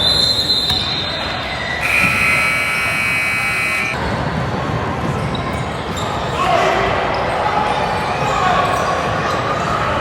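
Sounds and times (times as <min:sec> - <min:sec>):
gym background noise: 0:01.5 - 0:06.2
scoreboard buzzer: 0:01.8 - 0:04.0.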